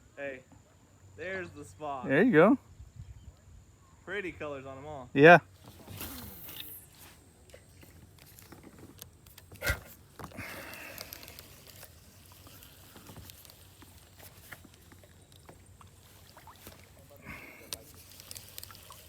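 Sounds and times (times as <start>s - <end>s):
fishing gear clicks and knocks: 5.6s - 19.0s
brief hiss: 5.7s - 7.3s.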